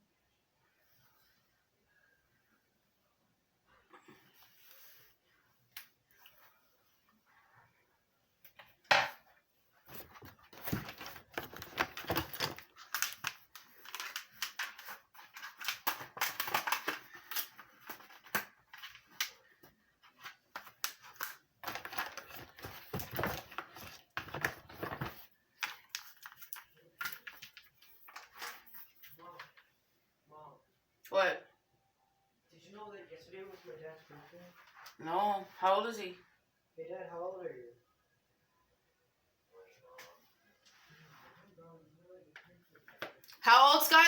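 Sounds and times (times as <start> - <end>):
handling rustling and clicking: 9.8 - 29.7.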